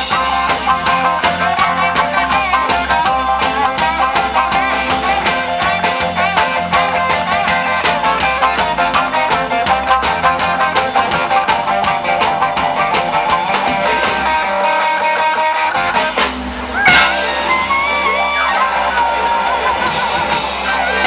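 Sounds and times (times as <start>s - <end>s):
guitar rock music: 0.0s - 21.0s
loud burst: 16.0s - 21.0s.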